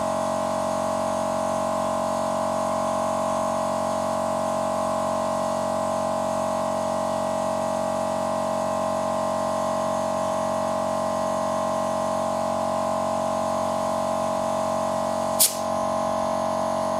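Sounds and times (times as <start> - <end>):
air compressor humming: 11.9 - 16.9
brief sharp sound: 15.4 - 15.7.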